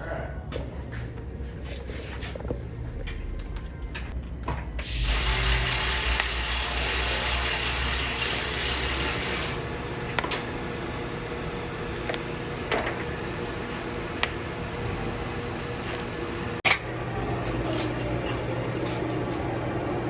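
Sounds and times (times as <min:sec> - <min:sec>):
power tool whining: 0:04.7 - 0:20.0.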